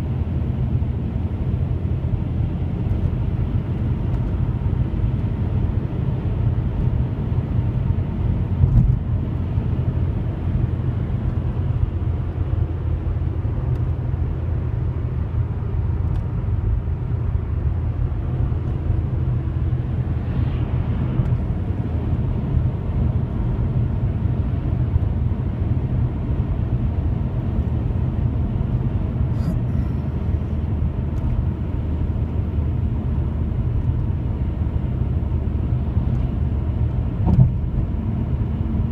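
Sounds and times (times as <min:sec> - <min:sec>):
low rumbling drone: 0:11.8 - 0:24.0, 0:29.1 - 0:30.9.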